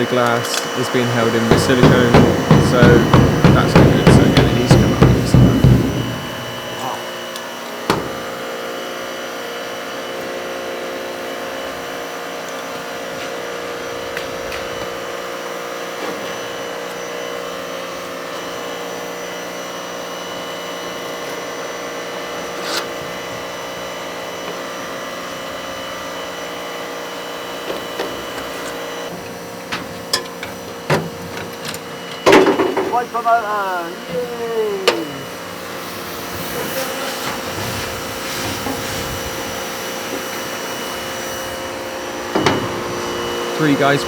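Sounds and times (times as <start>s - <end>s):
faint knocks: 1.5s - 6.8s.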